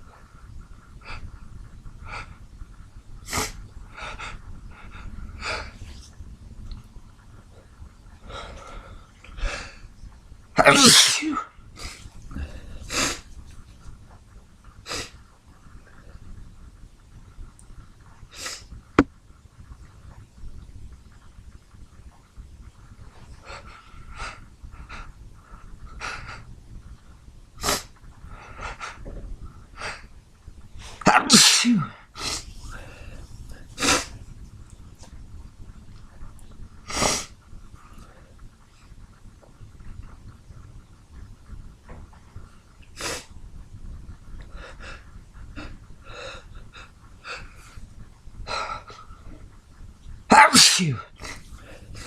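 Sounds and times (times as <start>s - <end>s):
man sneezing: 10.6s - 11.4s, 31.1s - 32.0s, 50.3s - 51.0s.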